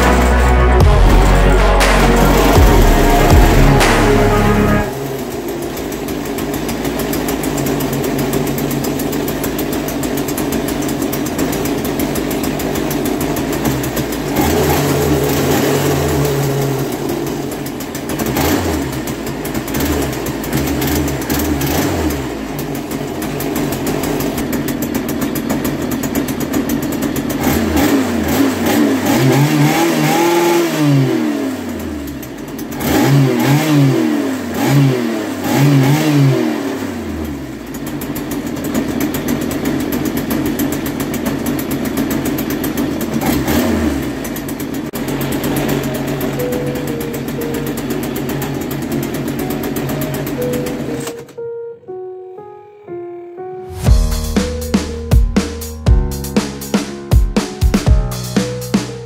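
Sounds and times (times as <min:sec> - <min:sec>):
string trimmer engine revving: 0:00.0 - 0:51.2.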